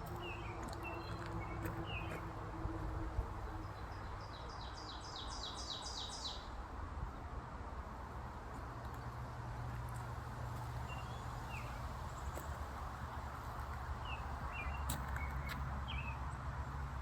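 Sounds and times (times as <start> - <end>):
distant traffic rumble: 0.0 - 17.0.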